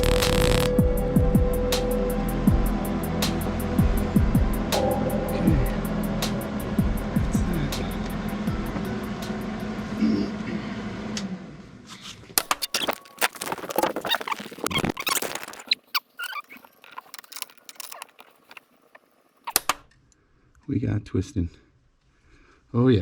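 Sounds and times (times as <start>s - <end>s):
steady humming drone: 0.0s - 10.7s
small metal parts clicking: 12.4s - 18.7s
tool being handled: 15.4s - 19.6s.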